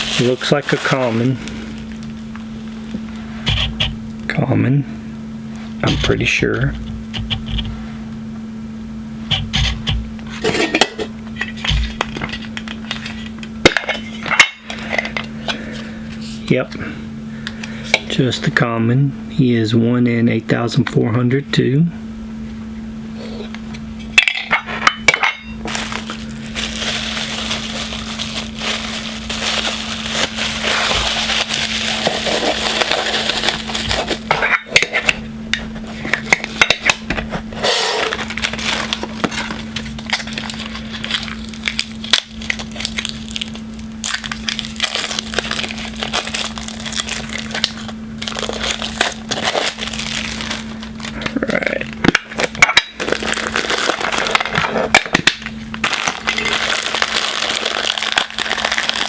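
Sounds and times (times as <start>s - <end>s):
plastic packaging crinkling: 0.0s - 3.8s, 10.2s - 15.2s, 25.1s - 35.0s, 37.8s - 51.5s, 52.1s - 59.0s
steady low hum: 0.0s - 59.0s.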